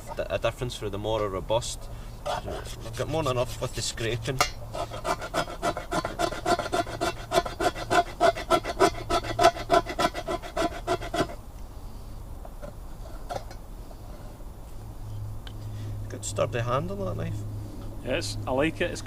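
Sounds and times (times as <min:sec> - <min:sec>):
knife scraping wood: 0:02.2 - 0:11.4.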